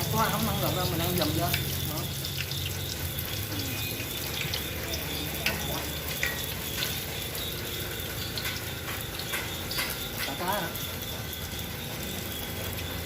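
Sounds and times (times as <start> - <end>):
oil pops and crackles: 0.0 - 10.4
food sizzling in hot oil: 0.0 - 13.0.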